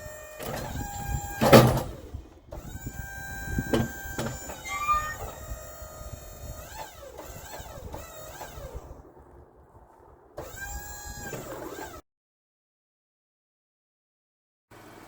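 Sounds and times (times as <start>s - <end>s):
electric motors whining: 0.0s - 12.0s.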